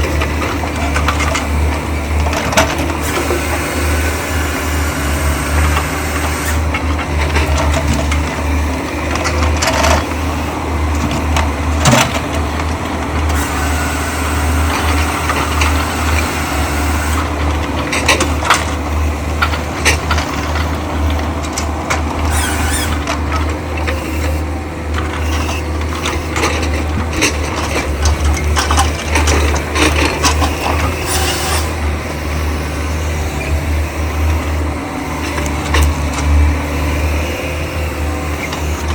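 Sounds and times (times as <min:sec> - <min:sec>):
diesel engine under load: 0:00.0 - 0:38.9
logs and metal clattering: 0:10.9 - 0:32.2.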